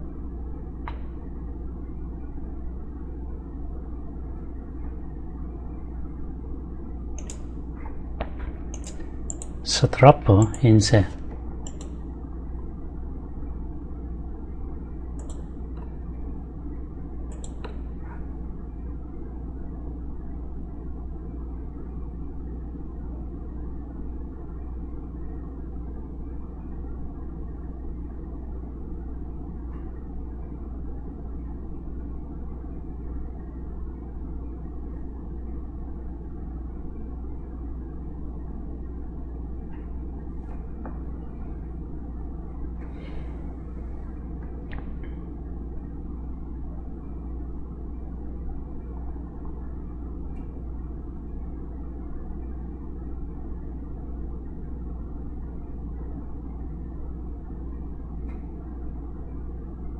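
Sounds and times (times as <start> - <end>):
low rumbling hum: 0.0 - 59.9
faint sharp clicks: 7.2 - 7.5.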